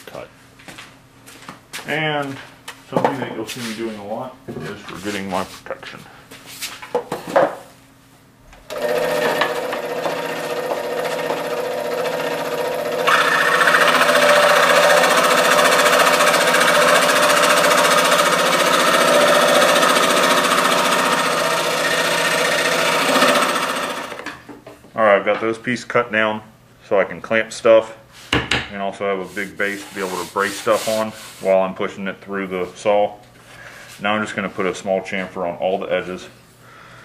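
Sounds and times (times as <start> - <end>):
scroll saw cutting wood: 8.7 - 24.3.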